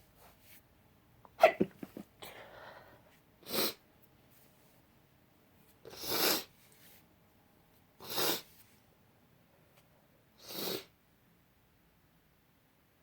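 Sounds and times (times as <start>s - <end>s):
woman's stifled sneezes: 1.4s - 2.0s.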